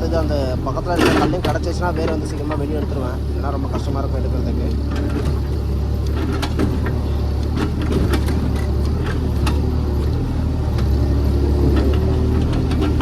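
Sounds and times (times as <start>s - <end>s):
diesel engine running under load: 0.0s - 13.0s.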